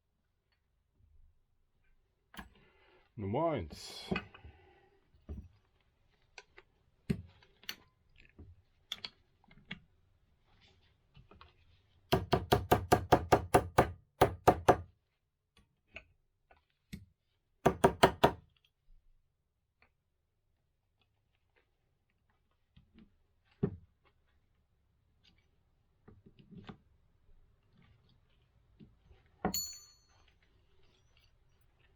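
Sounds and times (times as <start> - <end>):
hand tool knocking on metal: 12.2 - 14.8, 17.7 - 18.4.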